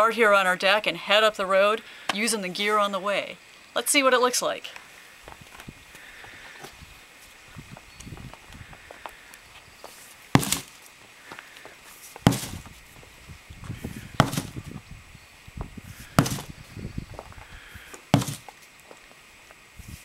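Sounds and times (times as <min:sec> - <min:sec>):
sledgehammer striking: 0:10.4 - 0:10.7, 0:12.3 - 0:12.7, 0:14.2 - 0:14.6, 0:16.2 - 0:16.6, 0:18.2 - 0:18.5.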